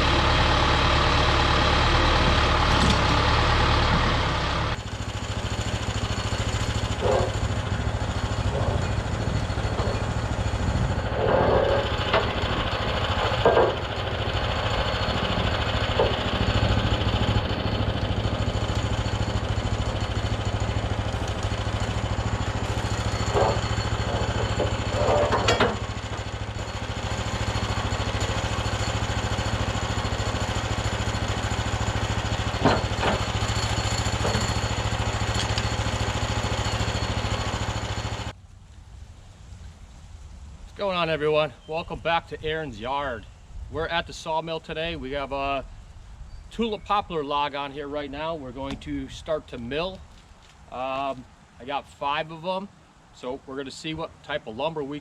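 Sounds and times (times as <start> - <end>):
small gasoline engine running: 0.0 - 38.3
short knocks and scrapes: 7.0 - 7.5, 8.2 - 13.9, 21.2 - 26.7, 32.6 - 33.4, 34.0 - 34.7.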